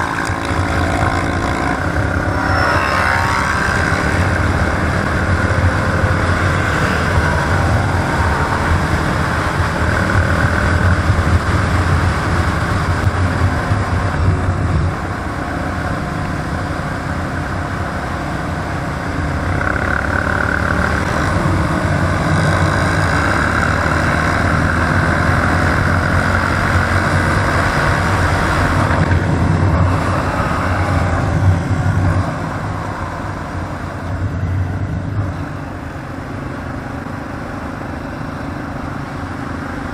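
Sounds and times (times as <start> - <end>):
atv engine running: 0.0 - 39.9.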